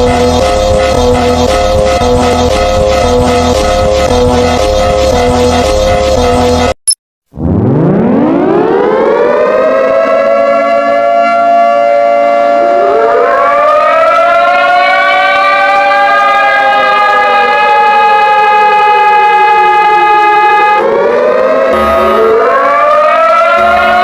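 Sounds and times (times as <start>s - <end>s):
siren wailing: 0.0s - 5.4s, 7.4s - 24.0s
higher siren tone: 7.4s - 24.0s.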